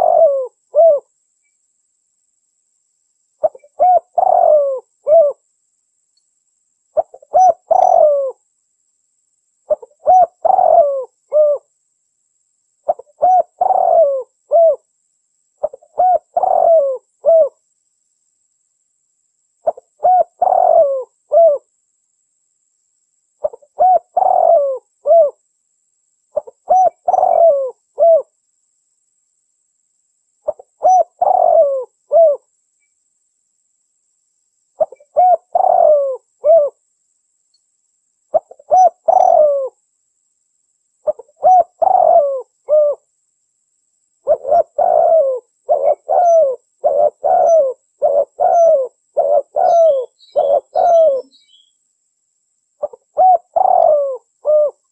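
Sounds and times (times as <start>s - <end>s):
dove cooing: 0.0s - 1.1s, 3.4s - 5.4s, 7.0s - 8.4s, 9.7s - 11.7s, 12.9s - 14.9s, 15.6s - 17.6s, 19.6s - 21.7s, 23.4s - 25.4s, 26.4s - 28.3s, 30.4s - 32.5s, 34.8s - 36.8s, 38.3s - 39.8s, 41.0s - 43.0s, 44.2s - 51.7s, 52.8s - 54.9s.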